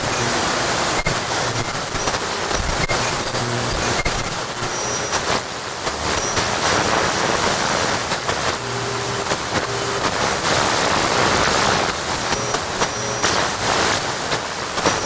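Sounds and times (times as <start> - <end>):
steady signal tones: 0.0 - 5.3, 6.0 - 6.6
television static hiss: 0.0 - 15.0.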